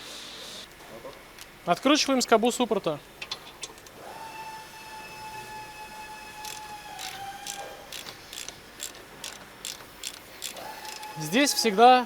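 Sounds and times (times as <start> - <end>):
power ratchet motor whine: 4.0 - 11.7
sharp ratchet clicks: 6.4 - 11.2.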